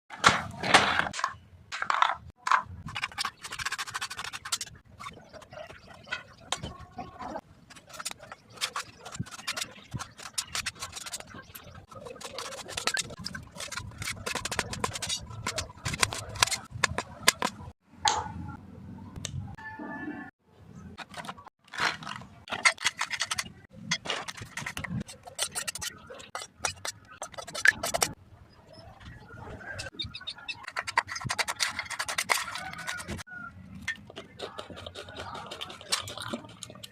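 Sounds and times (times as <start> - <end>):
utensils scraping and tapping: 1.1 - 6.8, 7.7 - 17.7, 21.0 - 28.2, 29.7 - 36.9.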